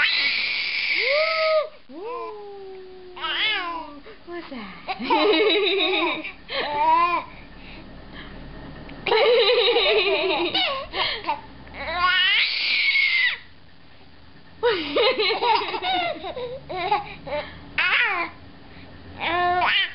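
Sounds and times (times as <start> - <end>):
baby laughing and squealing: 11.8 - 13.4.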